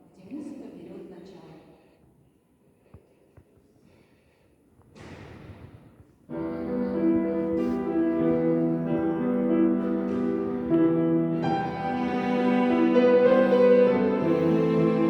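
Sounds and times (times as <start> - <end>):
piano chords: 6.3 - 15.0
cello sustained chords: 6.4 - 15.0.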